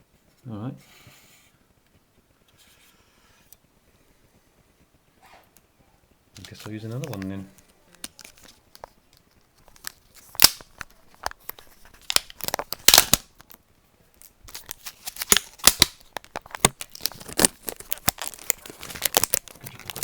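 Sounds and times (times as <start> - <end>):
packaging torn and crinkled: 7.9 - 13.6, 14.2 - 20.0.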